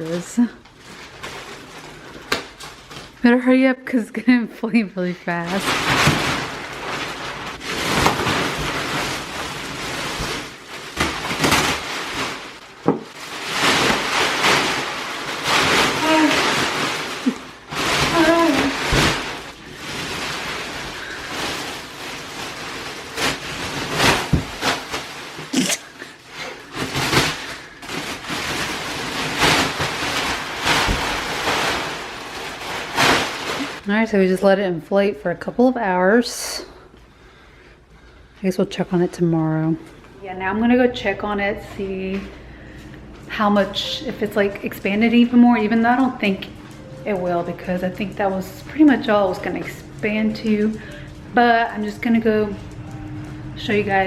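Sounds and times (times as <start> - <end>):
plastic wrapping crinkling and tearing: 0.0 - 3.4, 5.0 - 34.0.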